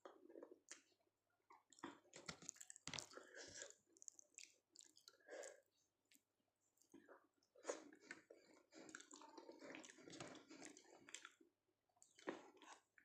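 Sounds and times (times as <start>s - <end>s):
wet chewing mouth sounds: 1.5s - 6.2s, 6.8s - 11.4s.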